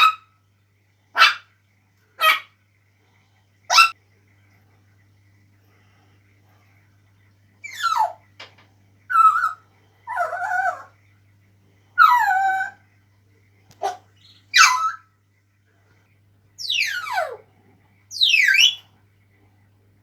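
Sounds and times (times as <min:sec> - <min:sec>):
parrot barking and whining: 0:00.0 - 0:00.4, 0:01.1 - 0:01.5, 0:02.2 - 0:02.6, 0:03.7 - 0:04.0, 0:07.6 - 0:08.3, 0:09.1 - 0:11.0, 0:12.0 - 0:12.8, 0:13.7 - 0:15.1, 0:16.6 - 0:17.5, 0:18.1 - 0:18.9.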